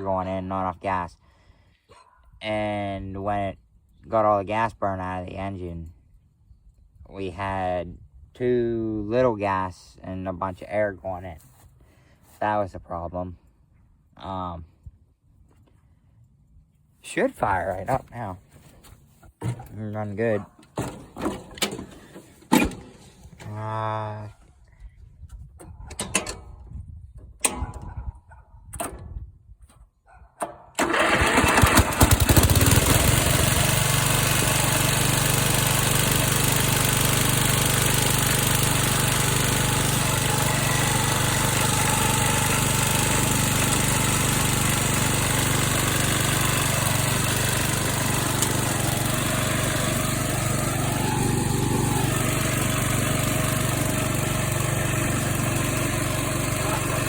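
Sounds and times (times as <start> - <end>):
lawn mower engine running: 19.4 - 23.8, 30.8 - 57.0.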